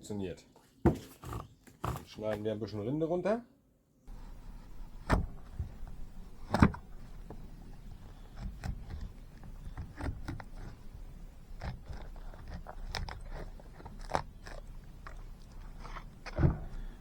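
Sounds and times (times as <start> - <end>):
knife scraping bark: 4.1 - 17.0.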